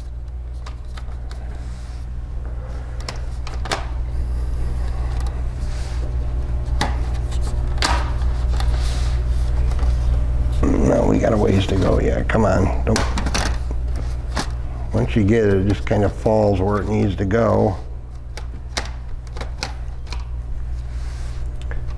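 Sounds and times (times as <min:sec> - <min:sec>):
steady low hum: 0:00.0 - 0:21.9
plastic parts clicking and scraping: 0:18.3 - 0:20.3.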